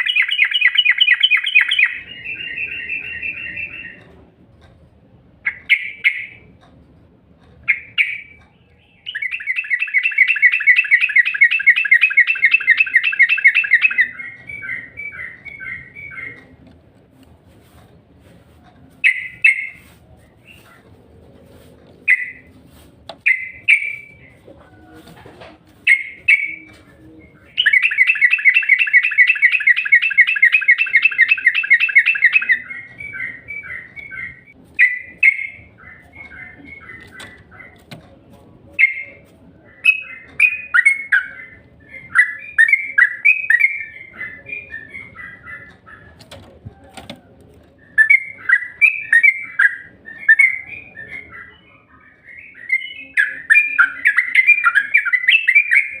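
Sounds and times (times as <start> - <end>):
rapid bird trill: 0.0 - 4.0, 7.7 - 16.4, 27.5 - 37.8
bird chirping: 0.0 - 4.2, 7.6 - 16.6, 19.0 - 20.8, 23.2 - 24.5, 25.8 - 56.0.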